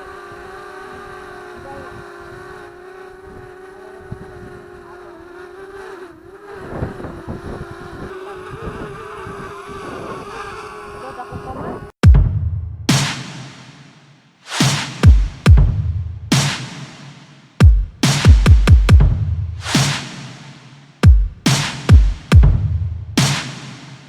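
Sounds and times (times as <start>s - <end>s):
drone propellers whining: 0.0s - 11.9s
wind rumbling on microphone: 0.1s - 4.9s, 6.1s - 12.0s.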